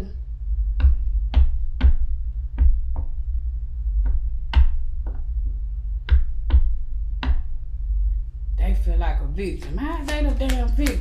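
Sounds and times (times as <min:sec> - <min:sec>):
steady low hum: 0:00.0 - 0:11.0
sharp taps: 0:04.1 - 0:05.2, 0:06.0 - 0:07.5.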